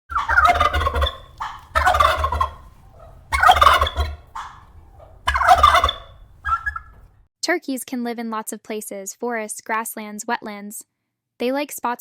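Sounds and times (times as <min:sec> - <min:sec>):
turkey gobbling: 0:00.1 - 0:07.2.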